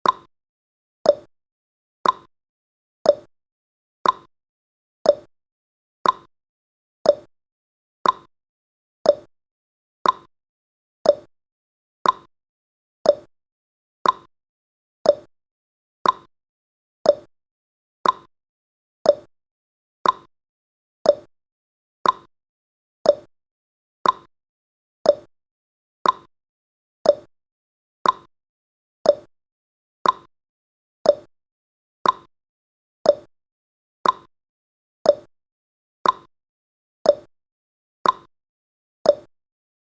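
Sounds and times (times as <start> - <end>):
clock-like timer ticks: 0.0 - 0.3, 1.0 - 1.3, 2.0 - 2.3, 3.0 - 3.3, 4.0 - 4.3, 5.0 - 5.3, 6.0 - 6.3, 7.0 - 7.3, 8.0 - 8.3, 9.0 - 9.3, 10.0 - 10.3, 11.0 - 11.3, 12.0 - 12.3, 13.0 - 13.3, 14.0 - 14.3, 15.0 - 15.3, 16.0 - 16.3, 17.0 - 17.3, 18.0 - 18.3, 19.0 - 19.3, 20.0 - 20.3, 21.0 - 21.3, 22.0 - 22.3, 23.0 - 23.3, 24.0 - 24.3, 25.0 - 25.3, 26.0 - 26.3, 27.0 - 27.3, 28.0 - 28.3, 29.0 - 29.3, 30.0 - 30.3, 31.0 - 31.3, 32.0 - 32.3, 33.0 - 33.3, 34.0 - 34.3, 35.0 - 35.3, 36.0 - 36.3, 37.0 - 37.3, 38.0 - 38.3, 39.0 - 39.4.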